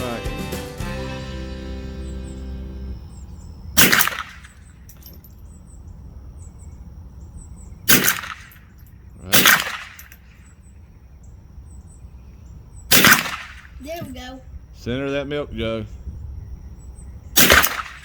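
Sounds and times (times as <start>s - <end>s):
rifle shots with echo: 3.8s - 4.8s, 7.8s - 10.4s, 12.9s - 13.8s, 17.4s - 18.0s.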